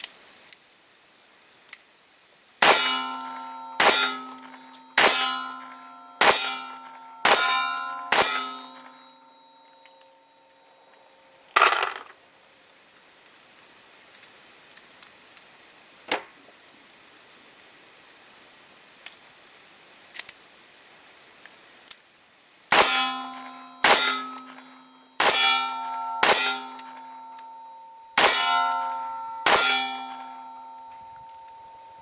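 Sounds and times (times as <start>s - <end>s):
metallic ringing: 2.6s - 11.6s, 22.7s - 32.0s.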